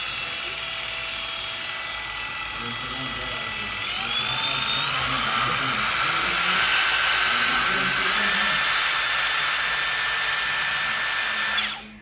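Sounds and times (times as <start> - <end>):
belt sander motor whining: 0.0 - 12.0.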